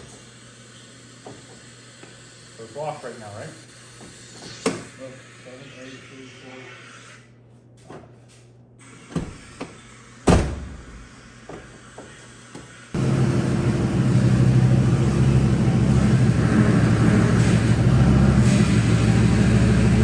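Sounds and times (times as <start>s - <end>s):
truck engine running: 13.0s - 20.0s.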